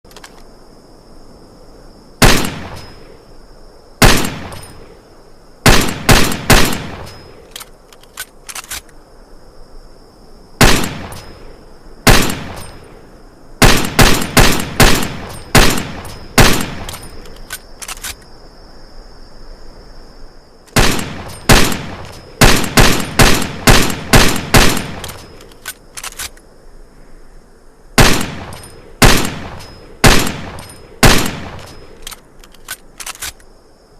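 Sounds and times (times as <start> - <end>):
pistol shots: 2.2 - 3.0, 4.0 - 4.8, 5.6 - 7.3, 10.6 - 11.4, 12.1 - 12.8, 13.6 - 17.1, 20.7 - 25.4, 28.0 - 31.9.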